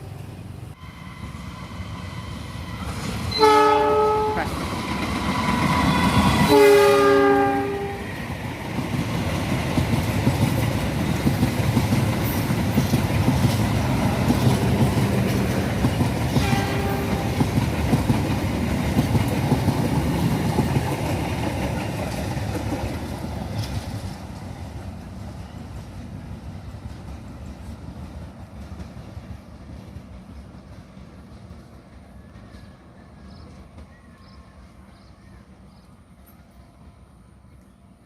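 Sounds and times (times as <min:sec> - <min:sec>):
locomotive horn chord: 0:03.3 - 0:04.5, 0:06.4 - 0:08.1, 0:16.4 - 0:17.4
train wheels clacking on rails: 0:04.4 - 0:34.7.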